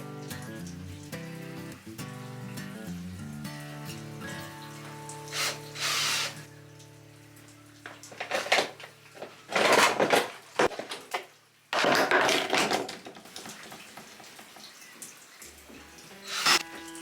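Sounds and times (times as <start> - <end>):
metal parts clattering and scraping: 8.1 - 11.0, 11.8 - 13.0.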